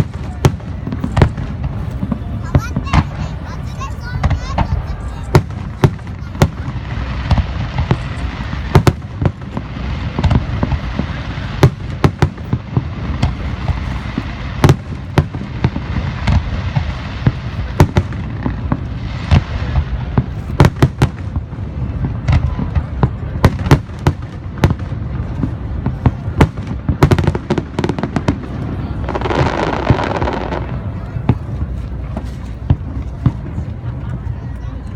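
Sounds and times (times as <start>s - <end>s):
fireworks hissing: 0.0s - 33.5s
fireworks bursting: 0.0s - 34.6s.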